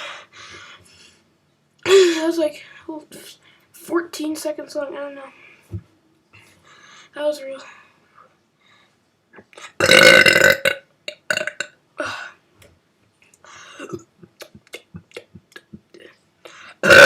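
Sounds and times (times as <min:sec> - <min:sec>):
person burping: 0:09.8 - 0:11.8, 0:16.8 - 0:17.0.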